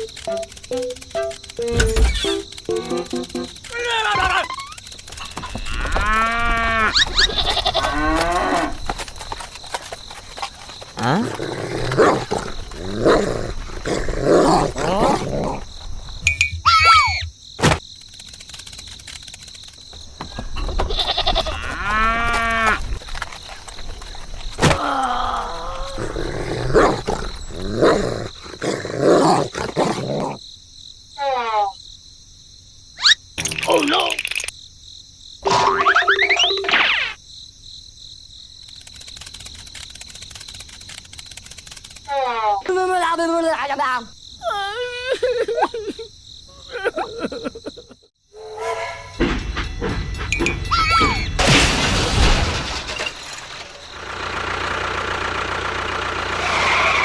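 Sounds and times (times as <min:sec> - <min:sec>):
animal growling: 0:03.6 - 0:09.0, 0:10.9 - 0:16.2, 0:21.3 - 0:23.0, 0:23.8 - 0:30.4
short falling animal cry: 0:03.8 - 0:08.8, 0:16.6 - 0:17.3, 0:56.3 - 0:57.0.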